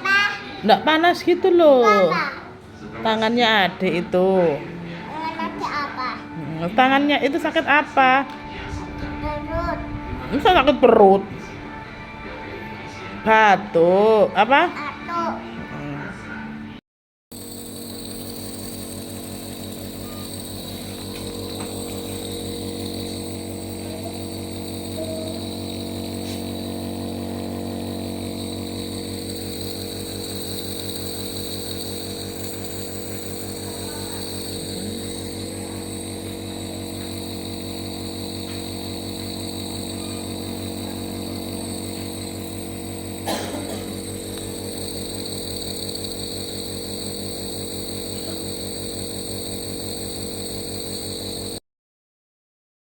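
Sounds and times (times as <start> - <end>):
steady machine hum: 17.3 - 51.6.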